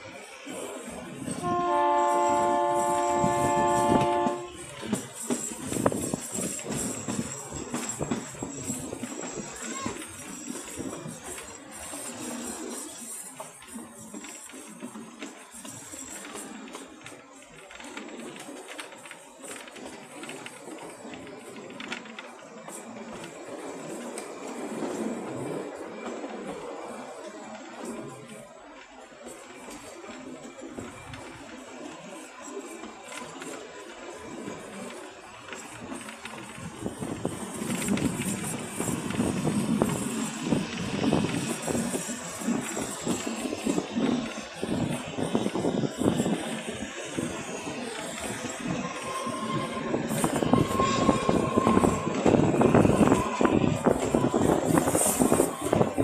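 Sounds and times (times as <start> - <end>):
rattle of running train: 0.0 - 56.0
train horn blast: 1.4 - 4.7.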